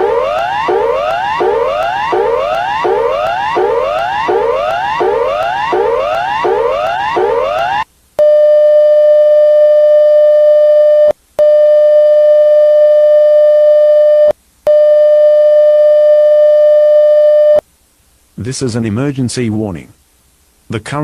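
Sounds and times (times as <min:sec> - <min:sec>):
loud steady electronic tones: 0:00.0 - 0:10.6.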